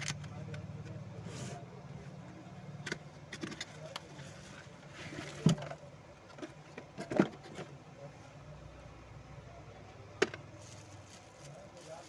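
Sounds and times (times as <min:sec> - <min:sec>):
clicks and knocks of handling: 0:02.8 - 0:04.2.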